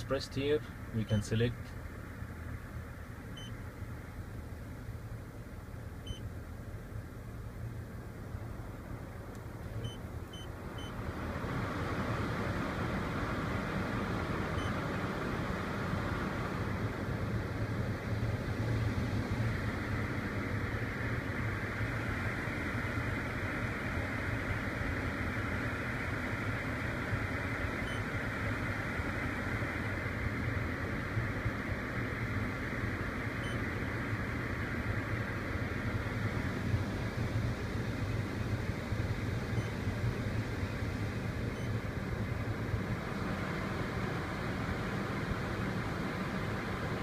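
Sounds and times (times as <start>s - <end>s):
idling car engine hum: 0.0s - 47.0s
short electronic beeps: 6.0s - 6.2s
car blower rushing air: 7.8s - 47.0s.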